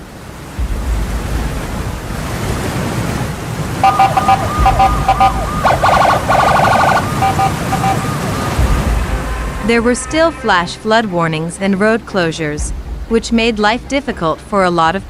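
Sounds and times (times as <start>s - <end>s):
low rushing noise: 0.0s - 11.5s
two-tone emergency siren: 3.8s - 10.4s.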